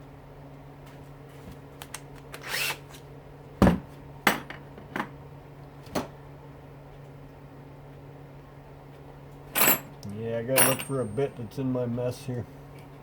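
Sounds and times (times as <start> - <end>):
steady low hum: 0.0 - 13.0
tools knocking on workbench: 3.6 - 5.1
metal parts rattling: 9.6 - 11.4.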